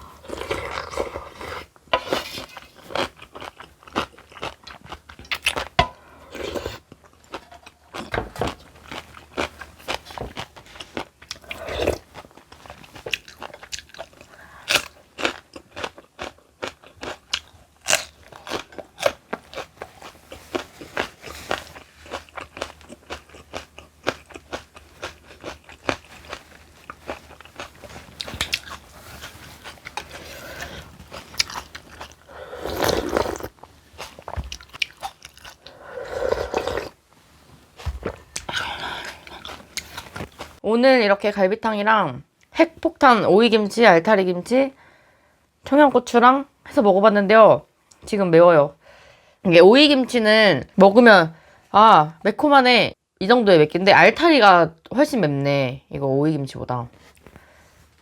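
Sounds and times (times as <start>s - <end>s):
crunchy chewing: 0.0s - 37.0s.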